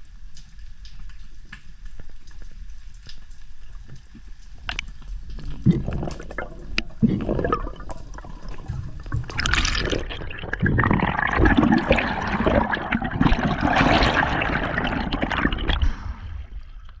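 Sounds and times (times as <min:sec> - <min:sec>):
water sloshing and gurgling: 0:02.3 - 0:17.0.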